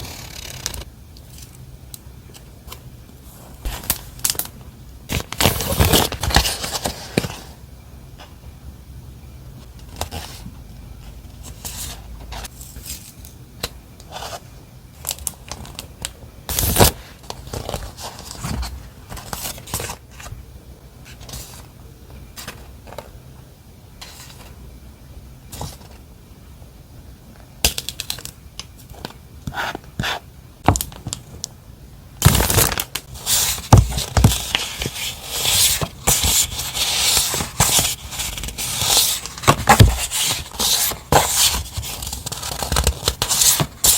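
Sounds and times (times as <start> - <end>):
packaging crinkling and rustling: 32.2 - 43.9.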